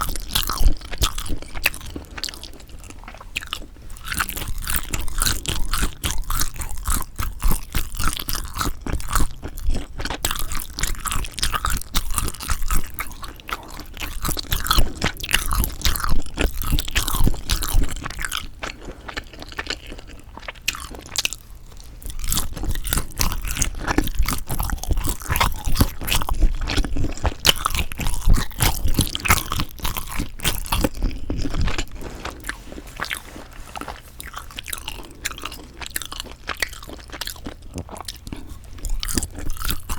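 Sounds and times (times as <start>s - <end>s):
wet chewing mouth sounds: 0.0s - 39.9s
soft crunches: 30.4s - 36.1s.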